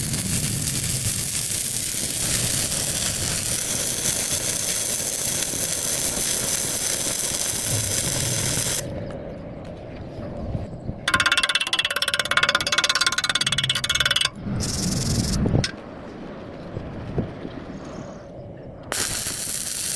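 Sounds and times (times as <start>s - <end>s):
arc welding crackling hiss: 0.0s - 8.9s, 14.6s - 15.4s, 18.9s - 19.9s.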